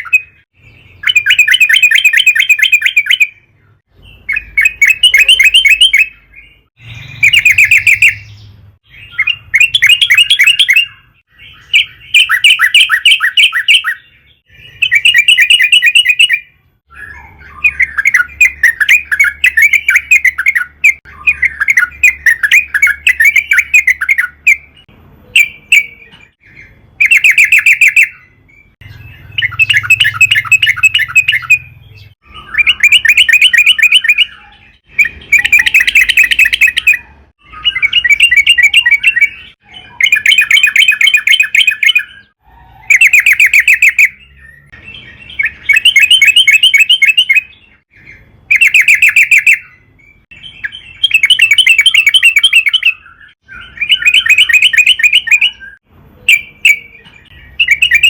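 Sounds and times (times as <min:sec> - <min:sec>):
bulbul chattering song: 0:00.0 - 0:58.0.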